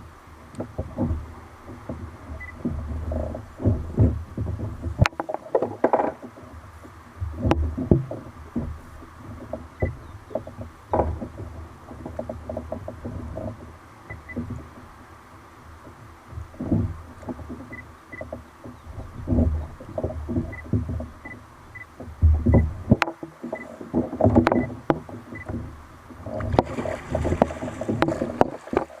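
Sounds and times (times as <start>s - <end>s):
gear knocks clicks and rattles: 0.4s - 14.9s, 15.8s - 29.0s
low rumble: 21.2s - 23.0s.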